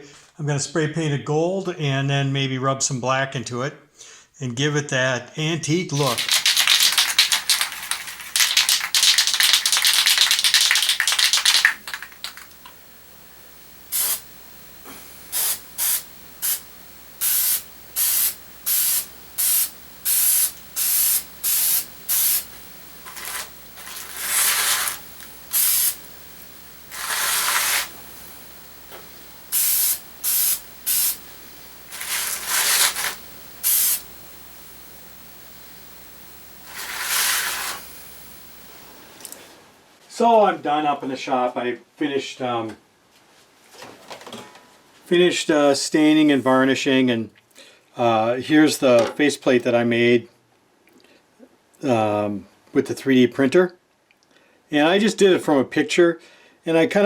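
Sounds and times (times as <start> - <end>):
spray paint can spraying: 6.0 - 12.9, 13.8 - 34.2, 36.6 - 38.4.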